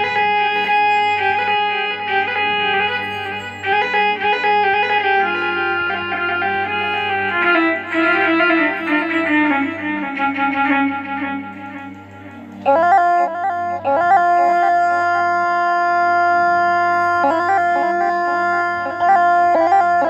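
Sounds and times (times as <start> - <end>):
steady low drone: 0.0 - 15.5
electronic keyboard fiddle melody: 0.0 - 20.0.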